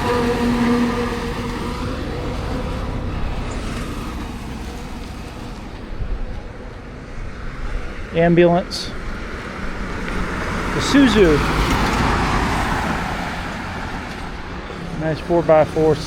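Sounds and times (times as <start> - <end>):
truck passing on a highway: 0.0 - 16.0.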